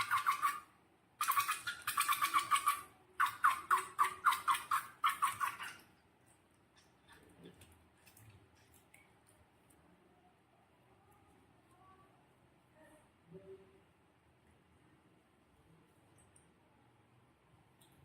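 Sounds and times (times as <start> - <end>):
faint small clicks: 16.1 - 16.6, 17.7 - 18.0.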